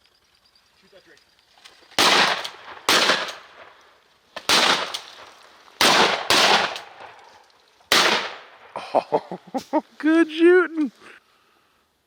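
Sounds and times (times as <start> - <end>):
shotgun blasts with echo: 2.0 - 3.7, 4.4 - 5.2, 5.8 - 7.2, 7.9 - 8.8.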